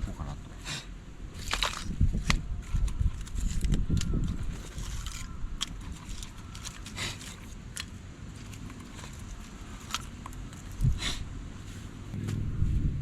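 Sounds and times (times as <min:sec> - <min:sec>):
wind rumble on microphone: 0:01.1 - 0:06.5, 0:10.7 - 0:13.0
light clicks and knocks of gear: 0:01.4 - 0:11.0.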